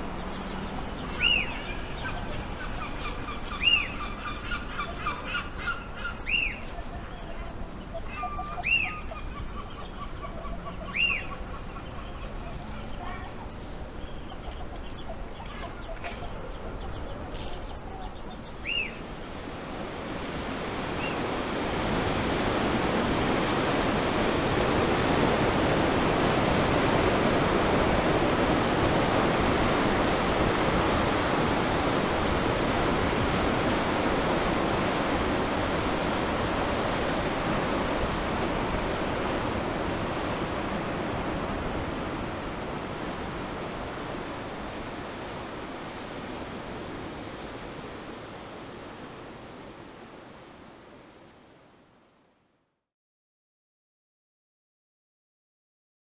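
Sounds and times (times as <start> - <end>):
faint bird chirp: 0.0 - 19.0
ocean surf rushing: 0.0 - 51.6.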